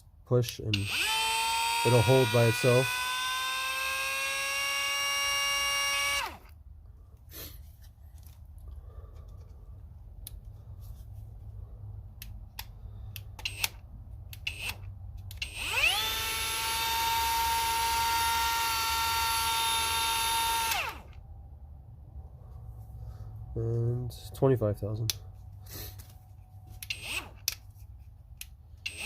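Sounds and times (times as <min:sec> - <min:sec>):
power tool whining: 0:00.7 - 0:06.6, 0:14.5 - 0:14.8, 0:15.4 - 0:21.2, 0:26.8 - 0:27.5.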